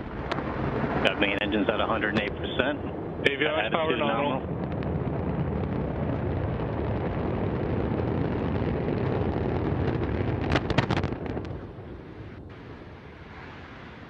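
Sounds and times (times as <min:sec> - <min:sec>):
rocket engines rumbling: 0:00.0 - 0:14.0
loud sharp cracks: 0:09.3 - 0:12.4.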